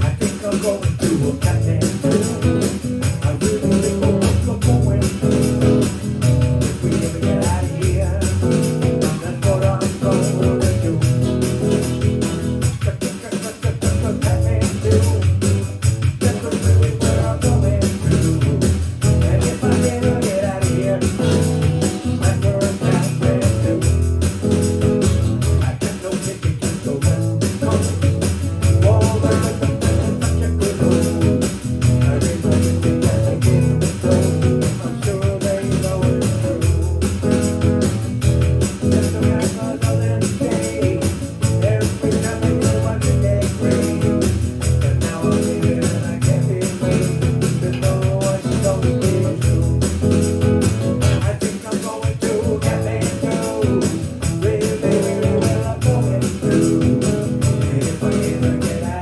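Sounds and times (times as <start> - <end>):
rock song with steady beat: 0.0 - 59.0.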